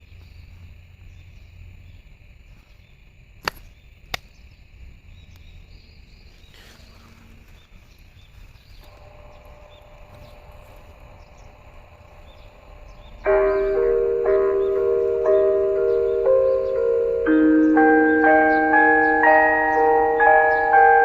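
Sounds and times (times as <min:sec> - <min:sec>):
low rumble: 0:08.9 - 0:17.7
loudspeaker hum: 0:08.9 - 0:21.0
steady high drone: 0:08.9 - 0:21.0.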